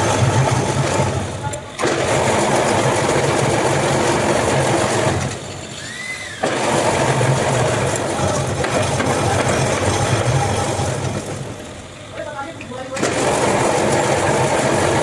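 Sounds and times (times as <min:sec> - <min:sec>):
workshop machine humming: 0:00.0 - 0:15.0.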